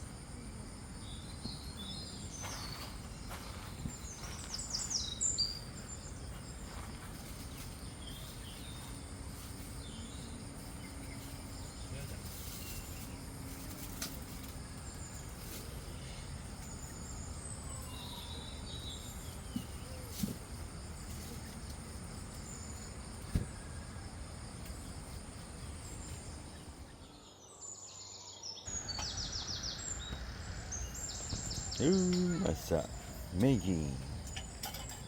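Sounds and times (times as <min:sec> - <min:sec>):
steady background hiss: 0:00.0 - 0:35.0
birds chirping: 0:25.7 - 0:35.0
high insect tone: 0:28.7 - 0:35.0.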